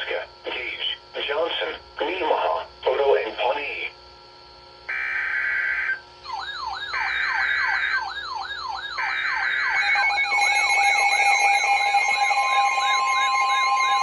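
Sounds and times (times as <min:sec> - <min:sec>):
siren tone sweeping up and down: 0:04.9 - 0:14.0.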